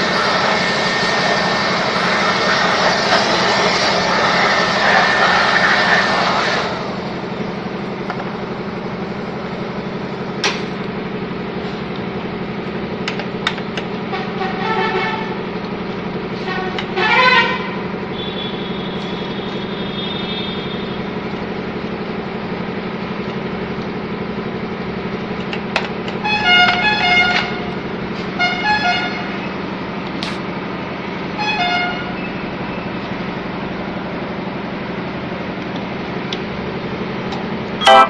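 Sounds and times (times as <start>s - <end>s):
short horn toots: 16.4s - 21.0s, 37.8s - 38.0s.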